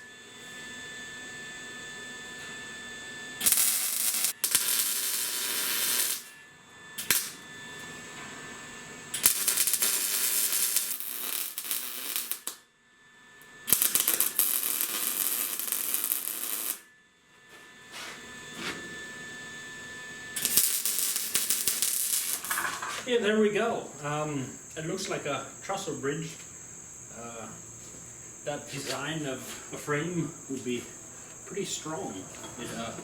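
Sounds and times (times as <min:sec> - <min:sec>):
welding arc crackling: 0:03.4 - 0:06.4, 0:07.0 - 0:07.4, 0:09.1 - 0:12.6, 0:13.6 - 0:16.9, 0:20.4 - 0:22.8.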